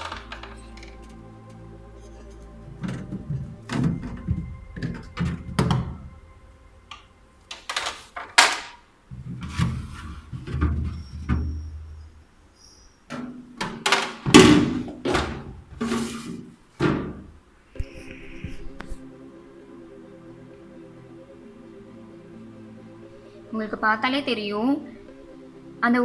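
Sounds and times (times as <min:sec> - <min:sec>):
refrigerator trays clunking and scraping: 0:02.3 - 0:06.1, 0:07.5 - 0:12.0, 0:13.2 - 0:17.3.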